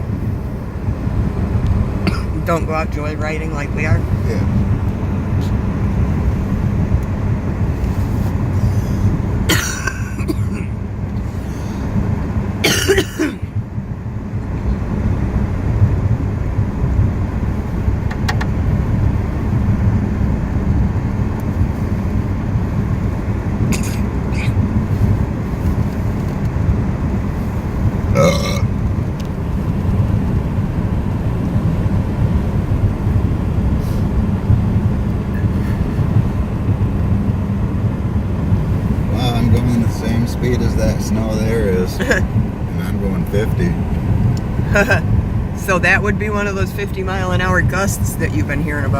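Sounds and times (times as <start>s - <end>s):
car interior road rumble: 0.0s - 48.9s.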